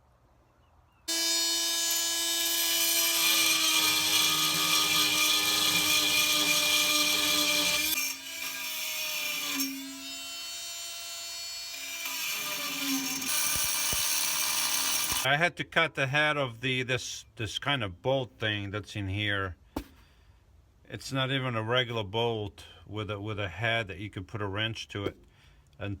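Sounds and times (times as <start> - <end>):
power cutting tool whining: 1.1 - 15.3.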